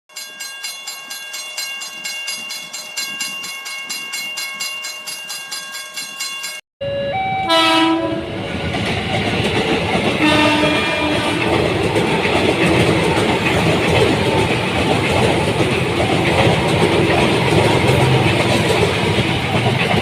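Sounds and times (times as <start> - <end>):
electric train on rails: 0.1 - 20.0
train horn short notes: 7.4 - 8.3, 10.2 - 11.6.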